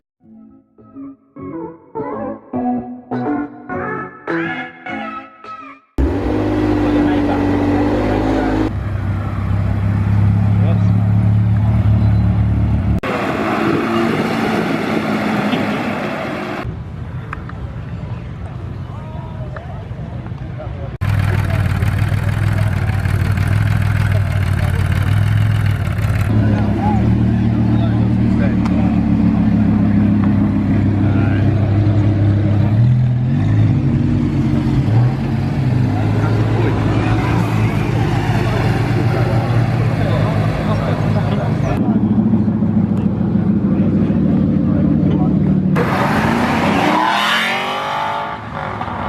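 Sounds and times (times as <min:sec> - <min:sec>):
car engines driving off: 0:06.0 - 0:19.0, 0:19.6 - 0:49.0
car engine idling: 0:21.0 - 0:32.7.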